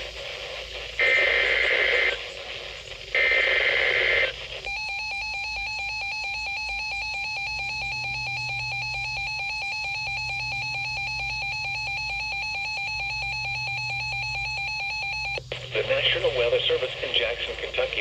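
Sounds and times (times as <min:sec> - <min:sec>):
electronic alarm tone: 0:04.7 - 0:15.4.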